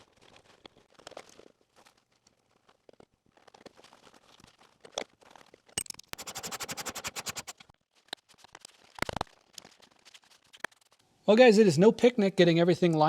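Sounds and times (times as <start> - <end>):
fast run of sharp clicks: 6.2 - 7.5.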